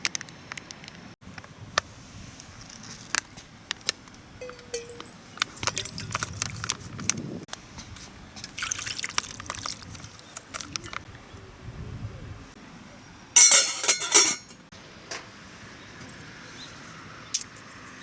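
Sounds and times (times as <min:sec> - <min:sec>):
liquid splashing and dripping: 0:04.4 - 0:06.8, 0:08.4 - 0:10.9.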